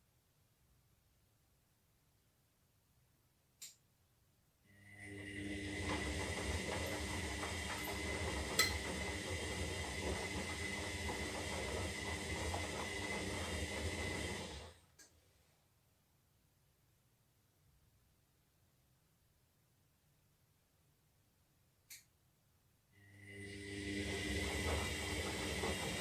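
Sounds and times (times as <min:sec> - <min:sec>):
faint click: 0:03.6 - 0:03.8, 0:21.9 - 0:22.1
washing machine motor whine: 0:04.8 - 0:14.8, 0:23.0 - 0:26.0.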